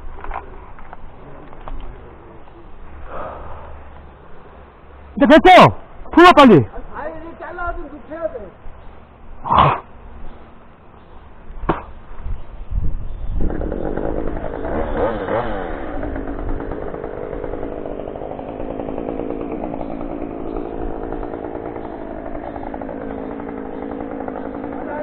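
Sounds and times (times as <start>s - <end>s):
two-stroke chainsaw running: 13.4s - 25.0s.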